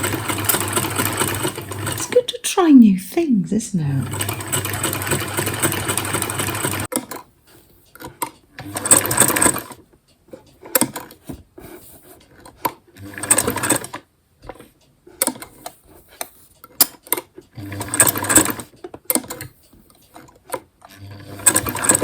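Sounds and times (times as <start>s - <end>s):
sewing machine stitching: 0.0s - 2.2s, 4.0s - 7.3s, 8.0s - 9.8s, 12.4s - 14.6s, 16.8s - 22.0s.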